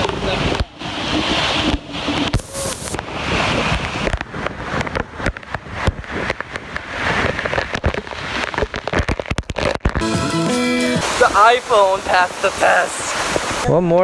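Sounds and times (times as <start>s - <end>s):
waterfall pounding on microphone: 0.0s - 4.2s, 10.9s - 13.7s.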